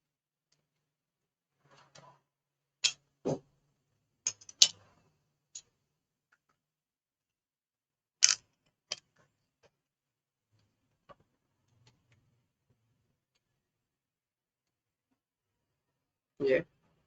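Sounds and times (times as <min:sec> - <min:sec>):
clicks of laptop parts and tools: 0:08.2 - 0:09.8.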